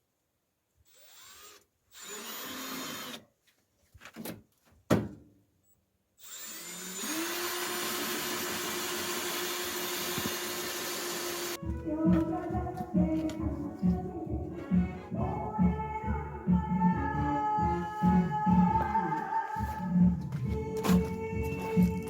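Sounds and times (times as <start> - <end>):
power drill spinning: 0.8 - 3.3, 6.2 - 11.6.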